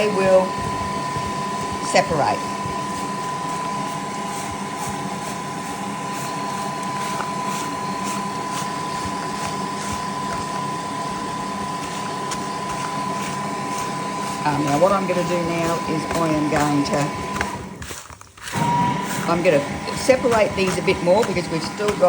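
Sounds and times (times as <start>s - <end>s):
machine hum with high whine: 0.0s - 17.8s.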